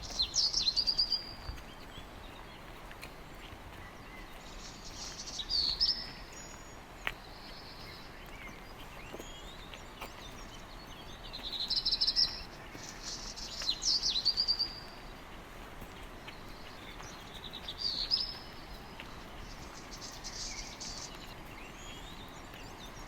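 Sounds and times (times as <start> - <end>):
songbird chirps and trills: 0.0 - 23.0
background hiss: 10.5 - 23.0.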